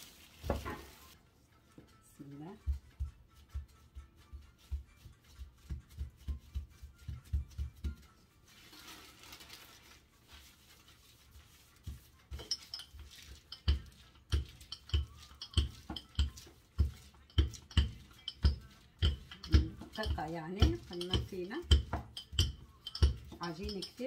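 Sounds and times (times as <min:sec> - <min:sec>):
plastic bags rustling: 0:00.0 - 0:01.2, 0:08.5 - 0:11.0.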